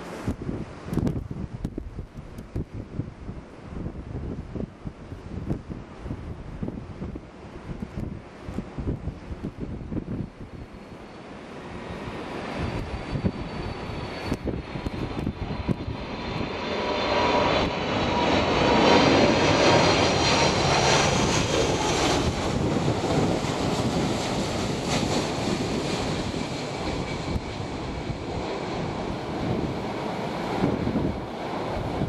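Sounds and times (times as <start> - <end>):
jet engines passing: 4.4 - 32.0
high engine whine: 10.2 - 32.0.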